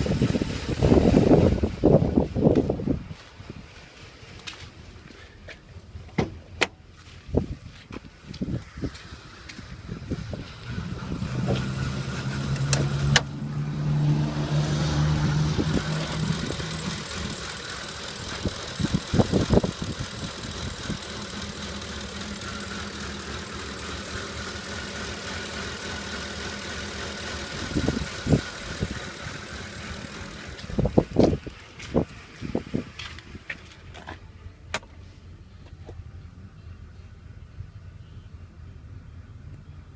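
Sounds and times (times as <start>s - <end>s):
engine idling roughly: 15.7s - 33.2s.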